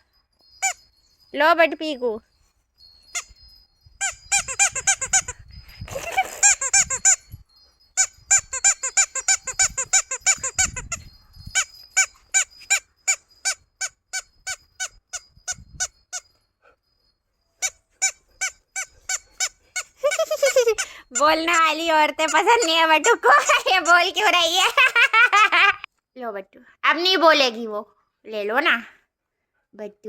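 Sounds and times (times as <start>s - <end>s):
squeaky toy doll squeaking: 0.6s - 0.9s, 3.0s - 3.4s, 4.0s - 7.4s, 8.0s - 16.4s, 17.6s - 25.8s.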